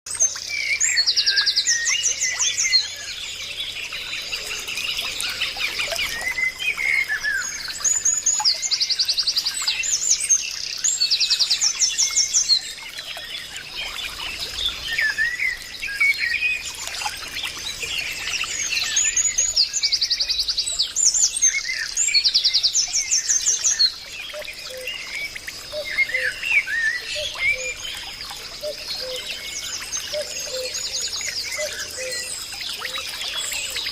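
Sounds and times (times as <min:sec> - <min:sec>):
birds trilling and chirping: 0:00.1 - 0:33.9.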